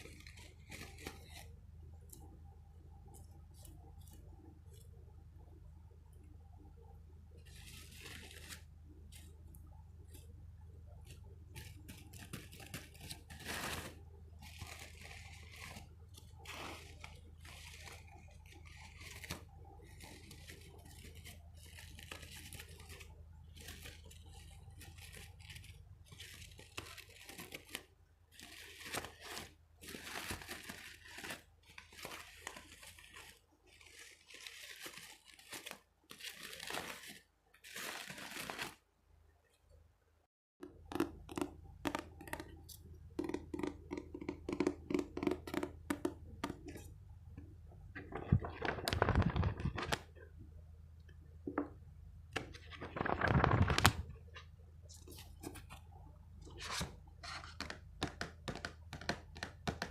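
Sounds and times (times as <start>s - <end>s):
faint low hum: 0.0s - 35.1s
crinkling and scratching by hand: 0.0s - 39.8s, 40.6s - 59.9s.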